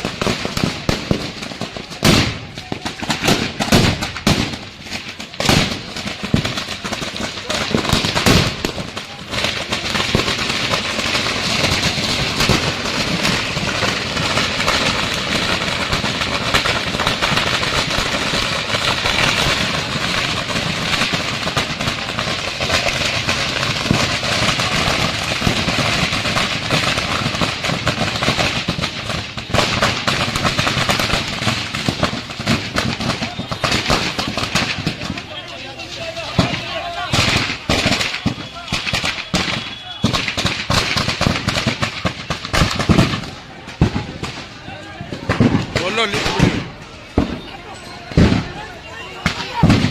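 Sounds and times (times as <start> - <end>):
firecrackers crackling and popping: 0.0 - 49.9.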